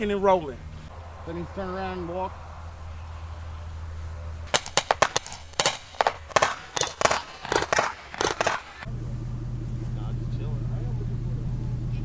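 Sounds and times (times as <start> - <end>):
rapid gunshots: 4.5 - 8.9.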